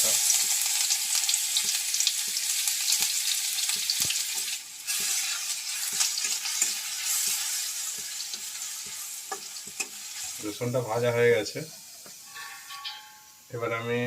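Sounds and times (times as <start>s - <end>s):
garlic sizzling in hot oil: 0.0s - 13.6s
spatula clicking and scraping: 3.7s - 10.1s.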